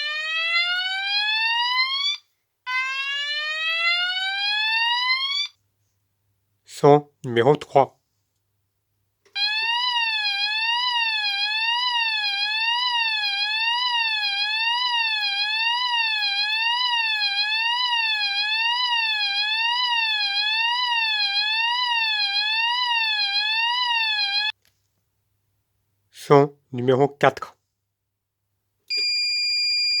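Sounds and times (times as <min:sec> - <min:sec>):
fire alarm sweeping tone: 0:00.0 - 0:05.6, 0:09.4 - 0:24.5, 0:28.9 - 0:30.0.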